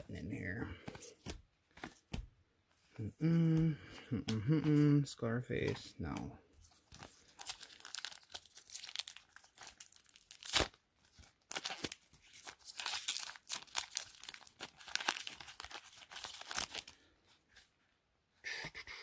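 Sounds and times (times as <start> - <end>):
card pack wrapper crinkling: 6.6 - 17.1.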